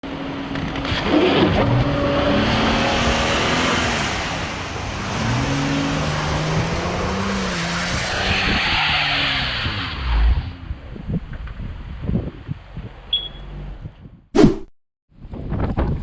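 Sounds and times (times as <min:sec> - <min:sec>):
engine revving: 0:00.6 - 0:10.4
tires spinning in snow: 0:00.7 - 0:10.6.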